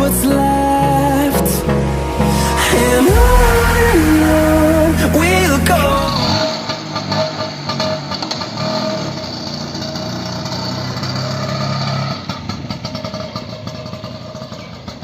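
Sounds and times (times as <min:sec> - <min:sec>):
scooter engine running: 0:06.4 - 0:15.0.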